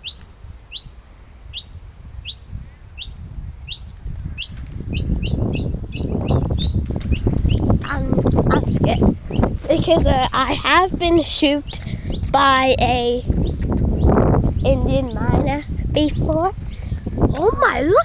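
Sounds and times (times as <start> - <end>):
bird sharp downward calls: 0.0 - 0.9.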